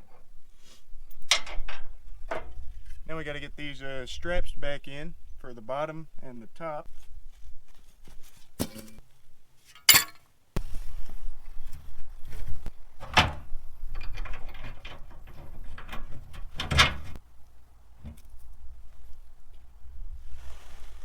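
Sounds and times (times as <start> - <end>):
metal clunks and clanks: 1.2 - 2.6, 13.0 - 17.2
metal rattling and scraping: 11.8 - 17.2.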